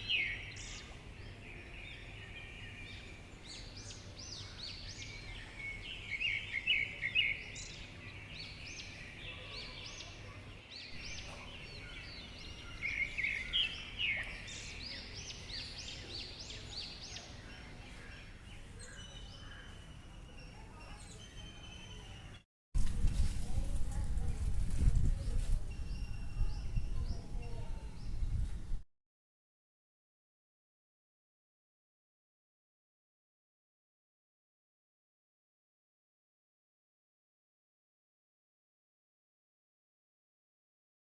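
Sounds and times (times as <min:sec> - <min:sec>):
small birds chirping: 0:00.0 - 0:22.4, 0:23.1 - 0:28.7.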